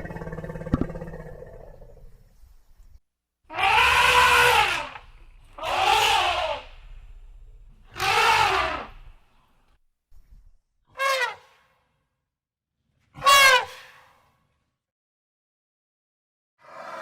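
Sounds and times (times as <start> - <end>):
elephant trumpeting: 3.5 - 9.2.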